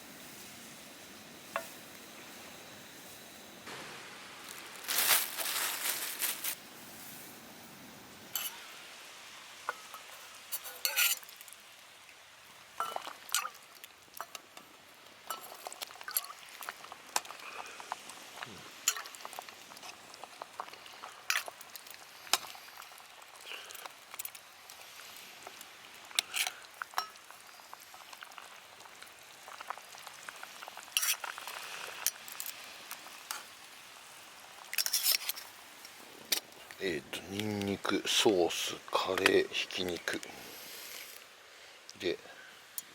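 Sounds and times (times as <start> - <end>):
food sizzling in a pan: 0.0 - 41.4
metal utensil scraping a pan: 8.3 - 8.6, 9.6 - 11.3, 12.8 - 13.6, 15.3 - 16.4, 30.9 - 31.3, 34.7 - 35.5.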